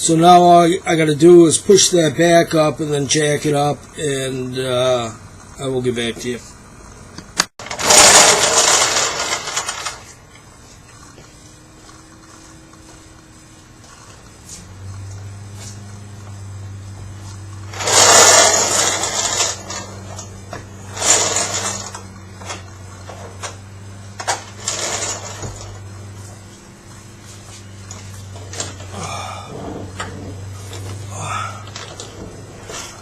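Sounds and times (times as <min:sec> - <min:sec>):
steady low hum: 0:00.0 - 0:33.0
metal rasping and scraping: 0:17.3 - 0:23.5, 0:24.2 - 0:26.3.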